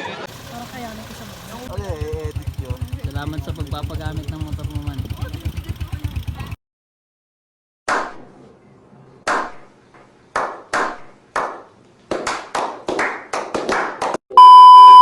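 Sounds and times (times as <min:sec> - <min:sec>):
hand claps with echo: 0:10.4 - 0:14.2
loud steady beep: 0:14.3 - 0:15.0.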